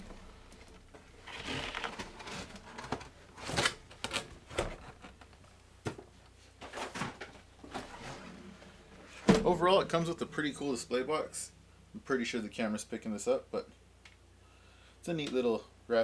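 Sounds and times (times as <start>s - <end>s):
packing material crinkling: 1.1s - 5.0s.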